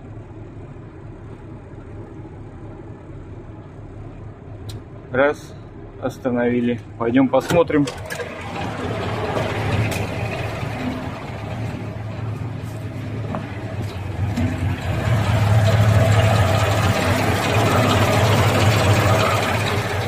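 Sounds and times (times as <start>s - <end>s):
truck diesel engine idling: 7.9s - 20.0s.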